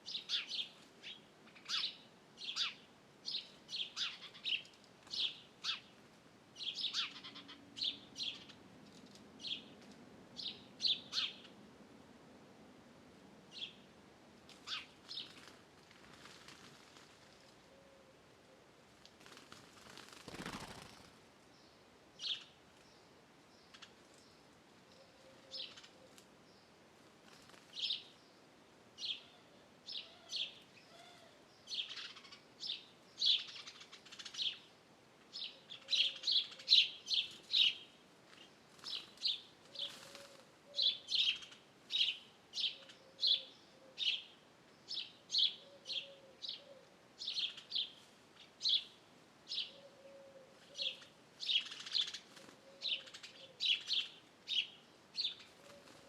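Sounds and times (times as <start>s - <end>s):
birds chirping: 6.6s - 9.8s, 35.3s - 56.0s
faint low bird calls: 6.6s - 9.8s, 27.3s - 34.7s, 35.4s - 48.9s, 49.5s - 56.0s.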